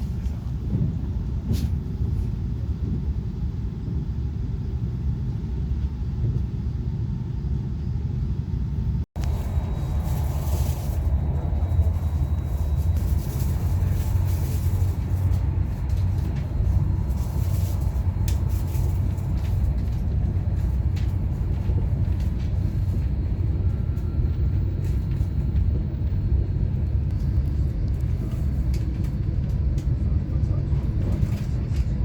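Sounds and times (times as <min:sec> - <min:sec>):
train rumbling inside carriage: 0:00.0 - 0:32.0.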